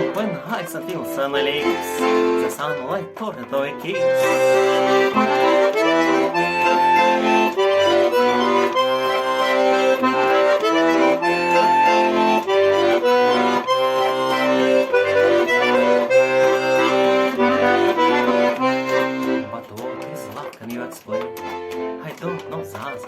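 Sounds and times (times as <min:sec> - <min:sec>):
instrumental music with steady beat: 0:00.0 - 0:23.0.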